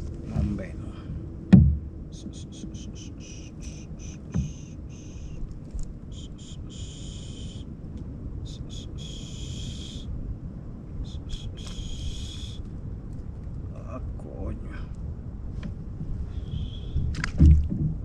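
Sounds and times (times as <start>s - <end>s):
low background rumble: 0.0s - 18.0s
soft knock: 1.5s - 1.8s, 4.3s - 4.5s
high buzzing animal call: 2.1s - 5.4s, 6.1s - 7.7s, 16.3s - 17.0s.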